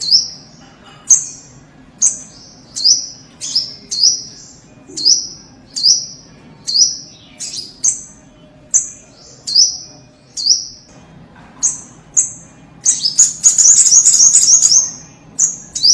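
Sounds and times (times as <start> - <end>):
bird chirping high: 0.0 - 10.9, 11.6 - 15.9
bird twittering fast: 11.6 - 15.9.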